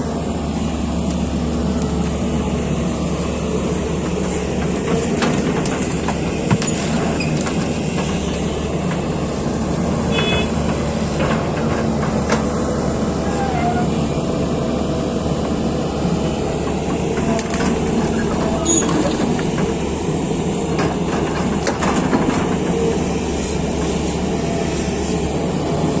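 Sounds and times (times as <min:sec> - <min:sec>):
heavy machinery engine running: 0:00.0 - 0:26.0
knocks and clanks: 0:04.0 - 0:09.2, 0:10.4 - 0:12.7, 0:16.3 - 0:23.1.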